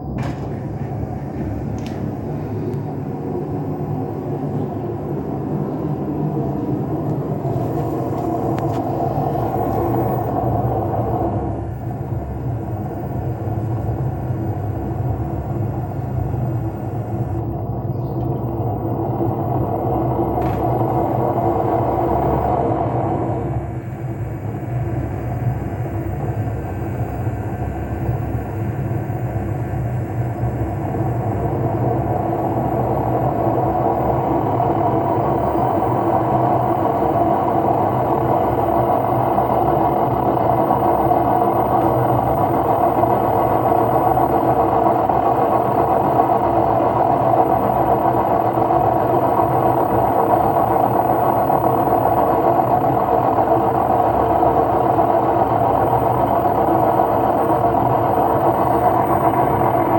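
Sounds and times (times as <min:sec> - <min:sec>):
washing machine drum rumbling: 0:00.0 - 0:11.8, 0:17.4 - 0:23.8.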